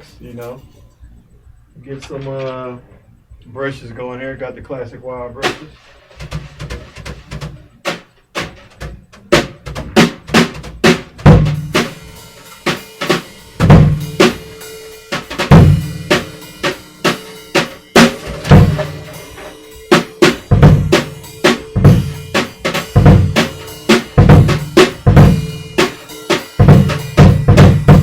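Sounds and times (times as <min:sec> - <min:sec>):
brush strokes on snare and cymbals: 0:05.4 - 0:06.2, 0:11.5 - 0:28.0
bass drum kicks: 0:08.9 - 0:11.8, 0:20.2 - 0:25.8, 0:26.6 - 0:28.0.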